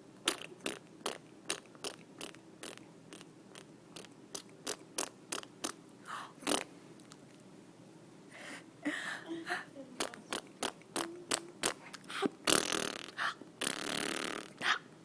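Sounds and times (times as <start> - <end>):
baby making spitting sounds: 10.0 - 14.8.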